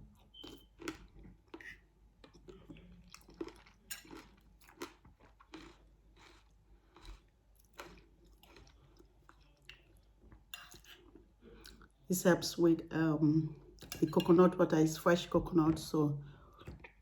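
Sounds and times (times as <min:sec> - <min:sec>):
chewing and crunching: 0:00.0 - 0:11.9.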